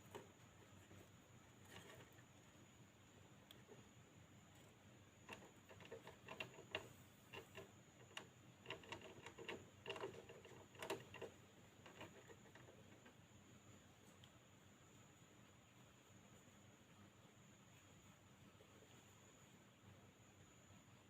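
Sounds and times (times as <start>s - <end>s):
hamster gnawing clicks: 0.0s - 1.0s, 1.6s - 2.3s, 4.6s - 13.2s.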